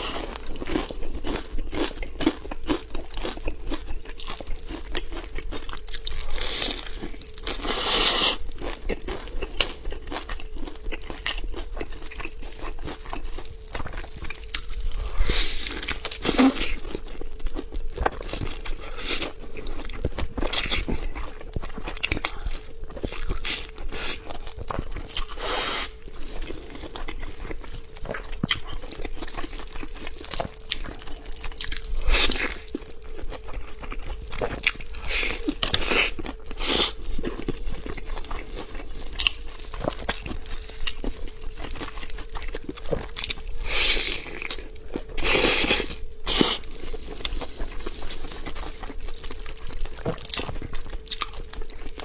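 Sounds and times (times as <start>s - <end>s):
faint steady hum: 0.0s - 52.0s
person chewing crunchy food: 0.0s - 52.0s.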